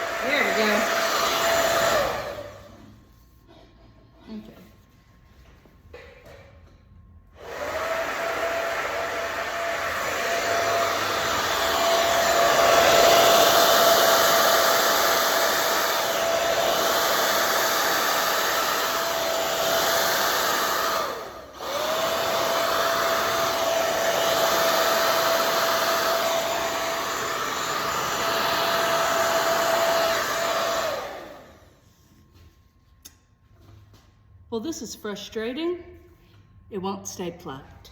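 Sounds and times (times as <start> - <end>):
hair dryer blowing: 0.0 - 3.0, 7.3 - 31.8.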